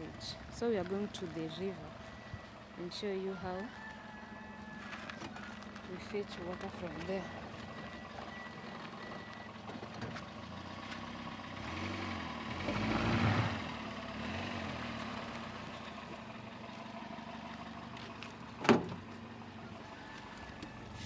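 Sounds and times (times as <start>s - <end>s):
car engine revving: 11.5s - 16.1s.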